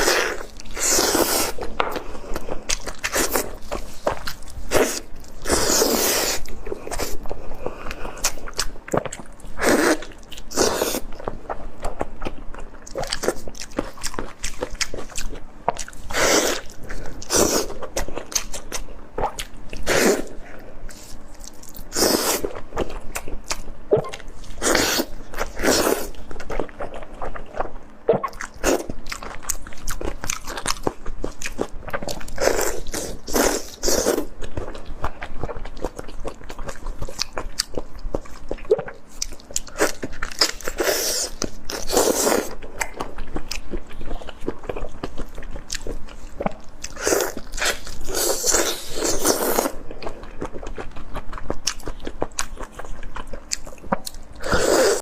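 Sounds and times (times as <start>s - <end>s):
crunchy chewing: 0.0s - 55.0s.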